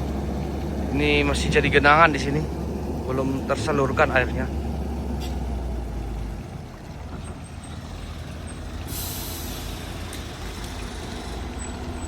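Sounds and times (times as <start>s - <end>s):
heavy truck engine rumbling: 0.0s - 12.0s
air hiss: 8.9s - 10.1s.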